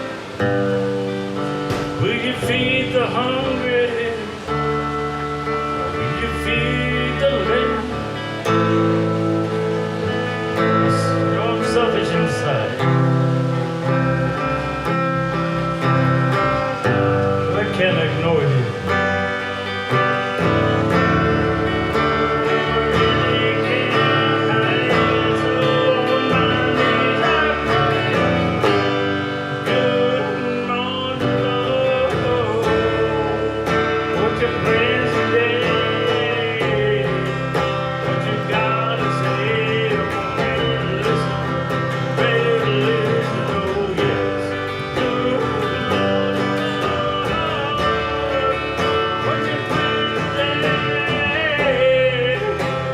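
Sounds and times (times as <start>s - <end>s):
live country guitar music: 0.0s - 52.9s.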